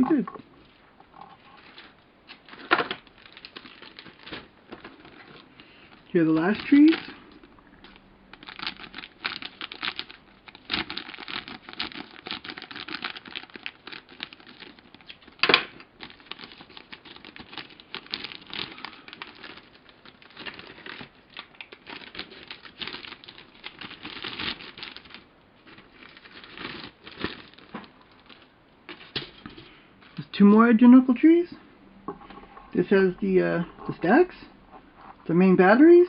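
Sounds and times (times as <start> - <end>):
plastic clicks and crinkles: 1.1 - 29.7.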